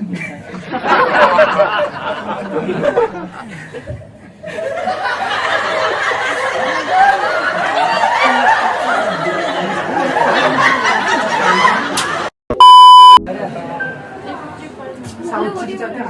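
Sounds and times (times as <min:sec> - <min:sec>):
people laughing: 0:00.0 - 0:12.3
loud electronic beep: 0:12.5 - 0:13.3.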